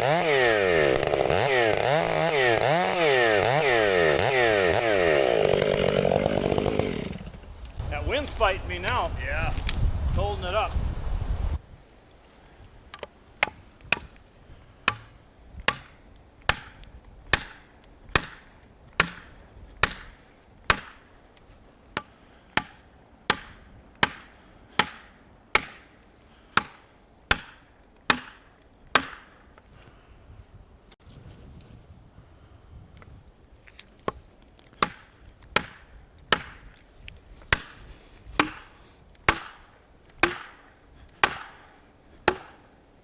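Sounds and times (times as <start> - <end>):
heavy blows into wood: 0.0 - 10.4, 14.8 - 21.1, 37.5 - 42.7.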